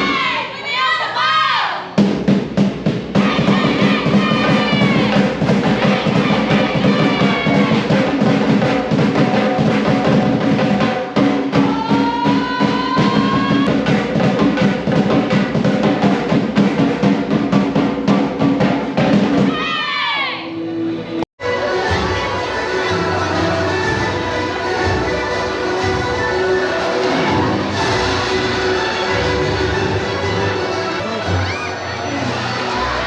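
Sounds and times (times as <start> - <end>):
fast dense drumming: 2.0 - 19.6.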